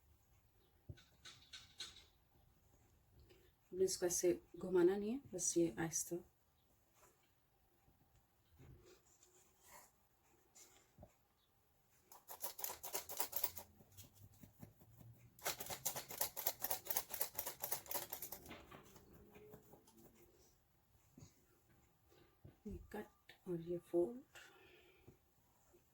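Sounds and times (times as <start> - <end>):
utensil rattling against mixing bowl: 12.1 - 13.7, 15.4 - 18.7.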